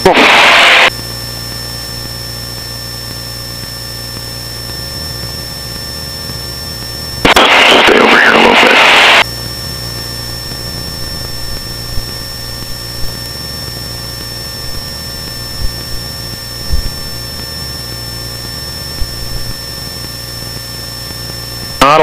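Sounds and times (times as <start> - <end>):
thin high whine: 0.0 - 1.1, 4.1 - 22.0
airplane engine droning: 4.5 - 22.0.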